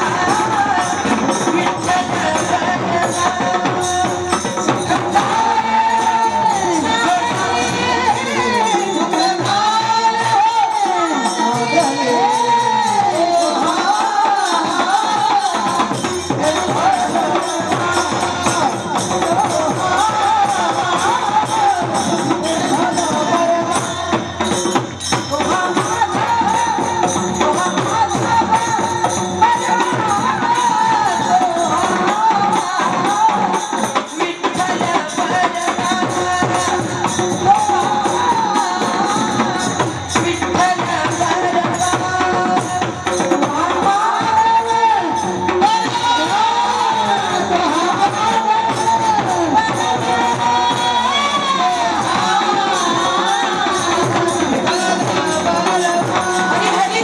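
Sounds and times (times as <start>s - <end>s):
drum: 0.0s - 57.0s
jingling hand percussion: 0.0s - 57.0s
woman singing folk song: 43.4s - 57.0s.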